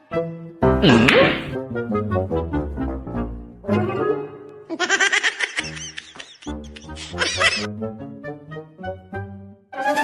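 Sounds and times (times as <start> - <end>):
background music with held tones: 0.0 - 4.7, 5.6 - 10.0.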